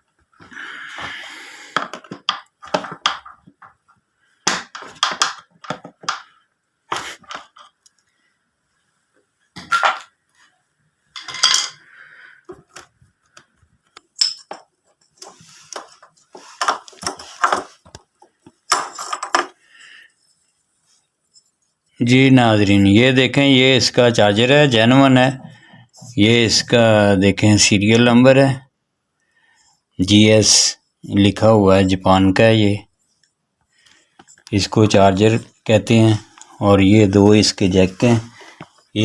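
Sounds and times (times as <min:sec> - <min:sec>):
tools and metal parts clinking: 0:11.2 - 0:11.8, 0:14.1 - 0:14.7, 0:18.7 - 0:19.5.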